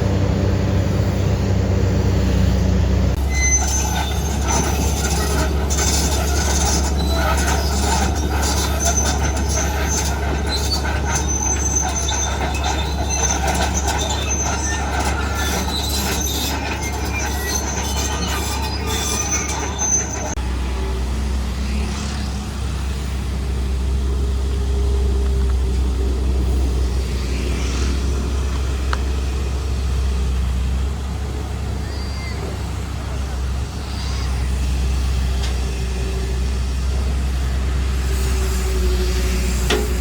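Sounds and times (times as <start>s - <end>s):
diesel machinery droning: 0.0s - 40.0s
high metallic squeals: 3.2s - 20.4s.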